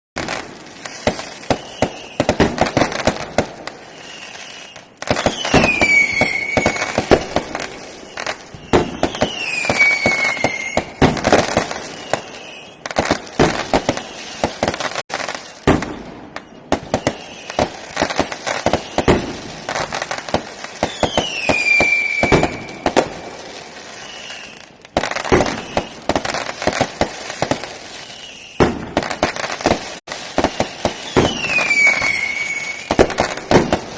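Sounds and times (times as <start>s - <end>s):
firecrackers banging and crackling: 0.2s - 33.9s
firework whistle falling in pitch: 3.9s - 7.0s, 7.9s - 11.0s, 20.9s - 23.3s, 30.9s - 33.0s.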